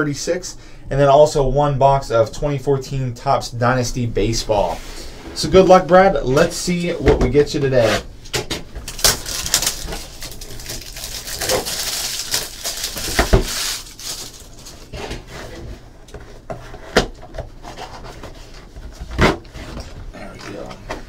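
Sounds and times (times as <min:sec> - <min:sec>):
wrapping crinkling: 0:08.8 - 0:14.9.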